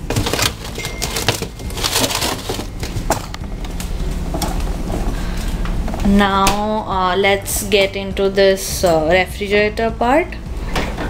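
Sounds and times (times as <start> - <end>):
packaging crinkling and crackling: 0.0 - 5.7.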